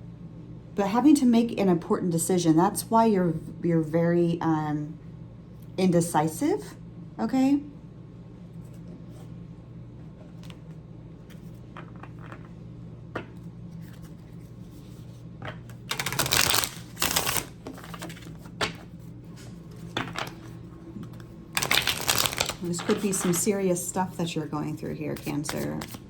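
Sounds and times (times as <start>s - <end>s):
steady low hum: 0.0s - 26.0s
cards being shuffled: 13.2s - 23.5s, 25.1s - 26.0s
cards tapping and clicking: 15.4s - 18.9s, 21.1s - 23.4s.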